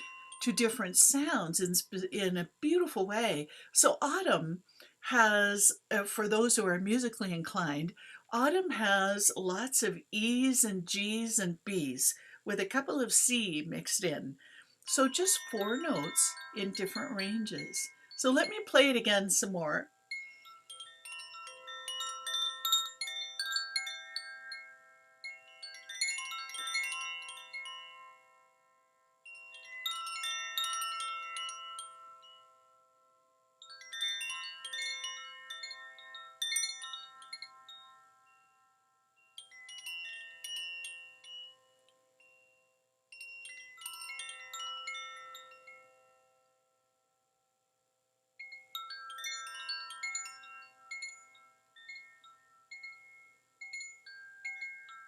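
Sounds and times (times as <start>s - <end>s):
tuned metal chimes ringing: 0.0s - 0.5s, 14.4s - 19.1s, 19.7s - 47.4s, 48.4s - 55.0s.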